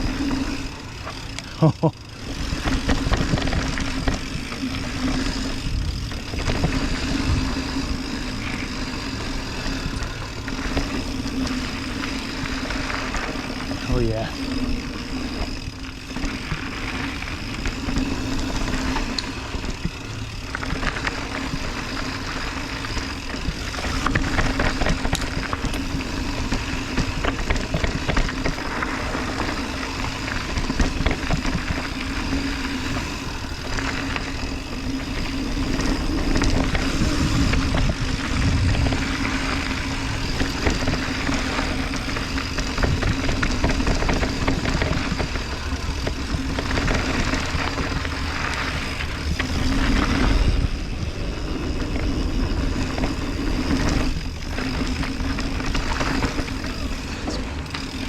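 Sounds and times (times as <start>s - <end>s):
bike rattling and knocking: 0.0s - 58.0s
tyres rolling over dirt: 0.0s - 58.0s
wind on microphone: 36.7s - 39.4s.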